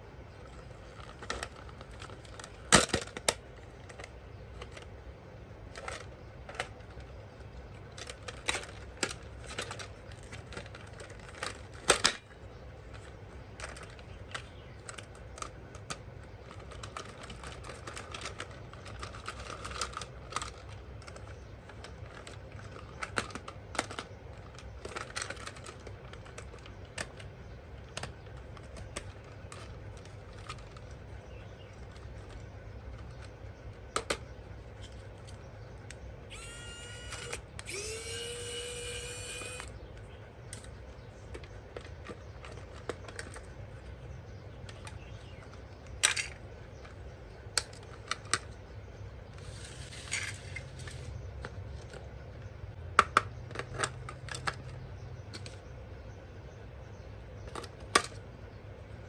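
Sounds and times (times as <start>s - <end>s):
steady low hum: 0.0s - 53.6s
plastic parts clicking and tapping: 0.4s - 55.7s, 57.4s - 58.3s.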